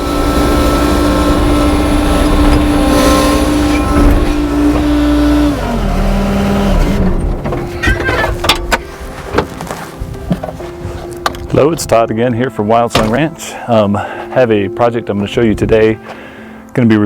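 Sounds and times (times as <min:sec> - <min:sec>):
skid steer engine revving: 0:00.0 - 0:08.7.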